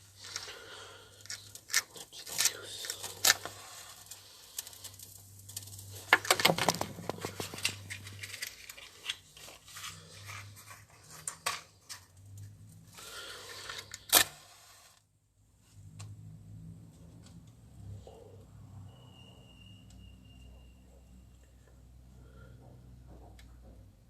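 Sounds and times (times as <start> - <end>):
paper crumpling and tearing: 1.2 - 12.1.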